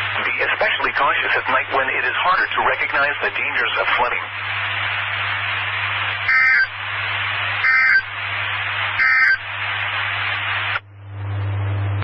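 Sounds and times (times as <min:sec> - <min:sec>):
radio hiss: 0:00.0 - 0:12.0
raspy two-tone data bursts: 0:06.2 - 0:06.8, 0:07.6 - 0:08.1, 0:09.0 - 0:09.5.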